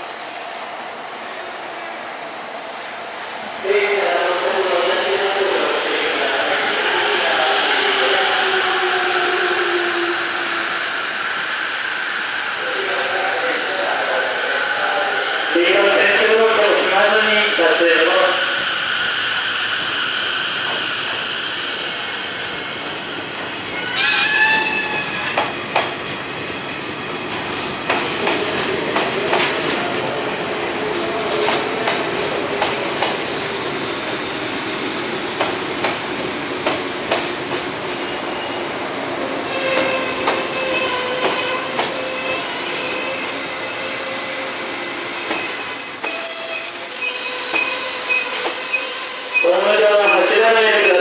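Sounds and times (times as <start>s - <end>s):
train wheels squealing: 4.0s - 25.6s, 38.0s - 51.0s
train wheels clicking over rail joints: 27.3s - 29.9s.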